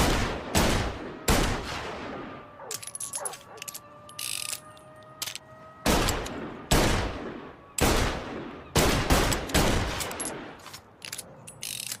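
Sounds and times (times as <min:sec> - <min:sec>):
light mechanical clicks: 0:09.4 - 0:12.0.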